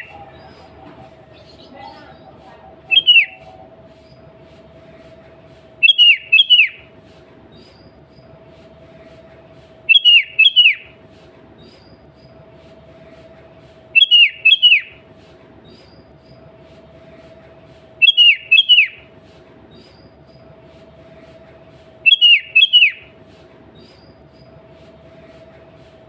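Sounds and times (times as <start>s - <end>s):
bird singing: 0.0s - 4.3s, 5.8s - 6.9s, 9.9s - 10.9s, 14.0s - 15.0s, 18.0s - 19.1s, 22.0s - 23.1s.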